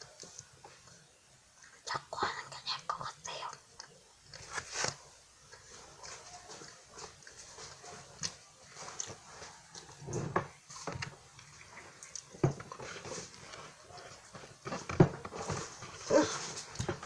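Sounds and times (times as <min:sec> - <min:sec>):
biscuit chewing and crunching: 0:03.4 - 0:17.0.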